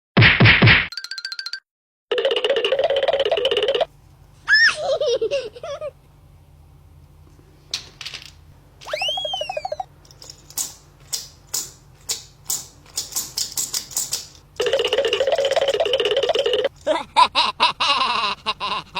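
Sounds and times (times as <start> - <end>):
short rising and falling tone: 8.9 - 9.9.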